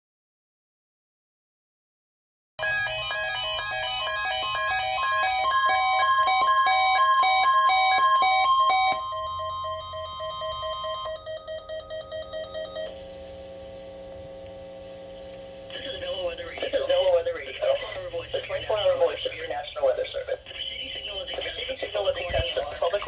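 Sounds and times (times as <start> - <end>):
pulsing electronic alert tones: 2.6 - 12.9.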